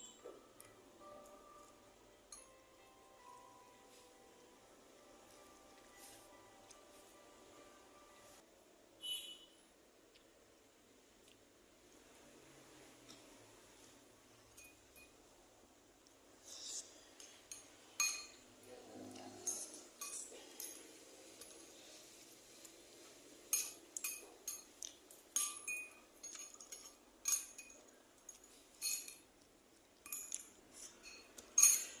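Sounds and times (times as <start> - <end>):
utensils clinking against a bowl: 16.7 - 18.4, 19.1 - 22.0, 23.5 - 29.4, 30.0 - 32.0.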